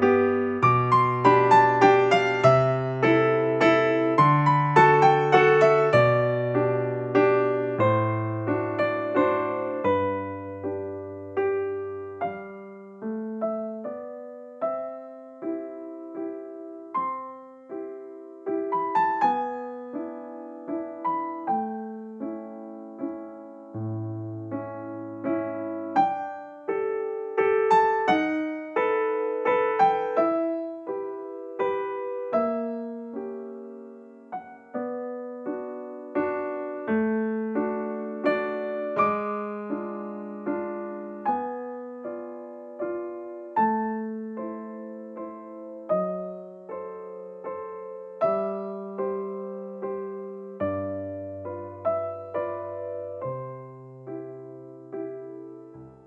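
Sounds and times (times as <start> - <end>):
gentle electric piano piece: 0.0 - 56.0.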